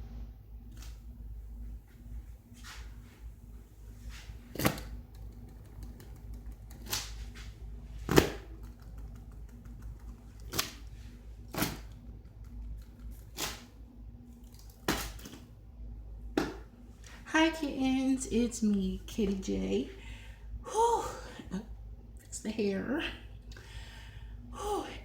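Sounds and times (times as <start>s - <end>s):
low steady hum: 0.0s - 25.0s.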